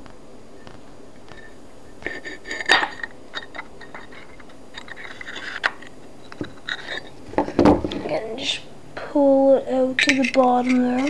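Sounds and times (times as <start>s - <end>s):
small metal clicks and scrapes: 1.3s - 7.1s, 10.0s - 11.0s.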